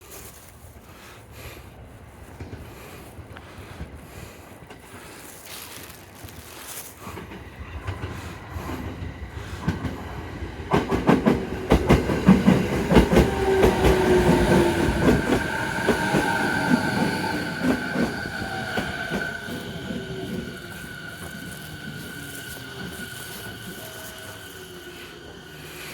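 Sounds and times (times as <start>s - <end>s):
train whine falling in pitch: 12.2s - 25.9s.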